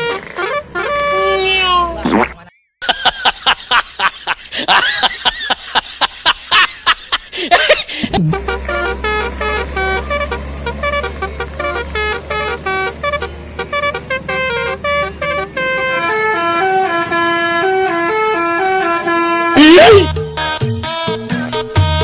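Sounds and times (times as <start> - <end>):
multi-tone bus horn tune: 0.0 - 2.0, 8.2 - 22.0.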